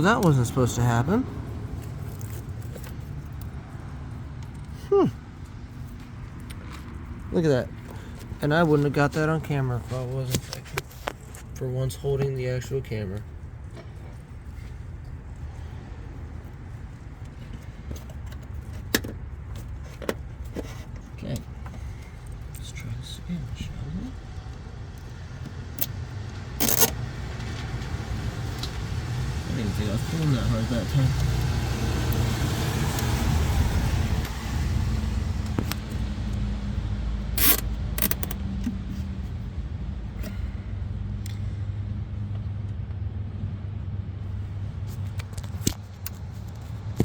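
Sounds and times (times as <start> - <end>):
sharp clicks: 37.4 - 38.8.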